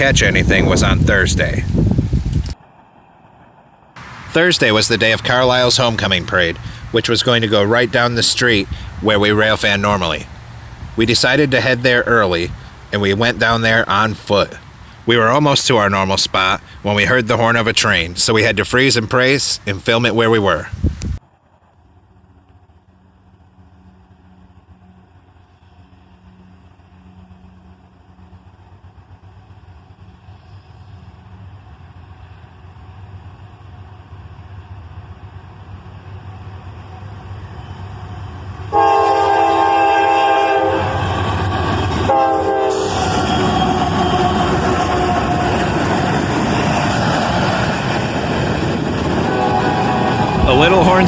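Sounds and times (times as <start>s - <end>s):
diesel locomotive engines rumbling: 0.0s - 51.0s
train passing with loud rumble: 0.0s - 51.0s
locomotive air horn blasts: 38.7s - 45.8s, 49.2s - 51.0s.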